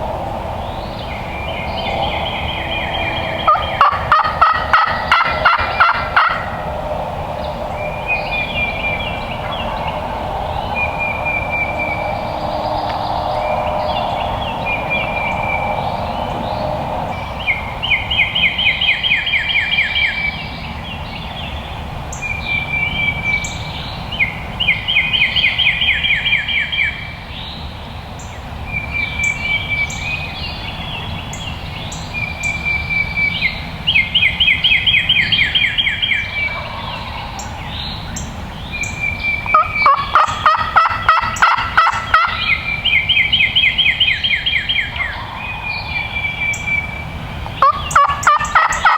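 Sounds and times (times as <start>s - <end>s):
turkey gobbling: 3.4s - 6.8s, 36.4s - 37.6s, 39.4s - 42.7s, 47.5s - 48.9s.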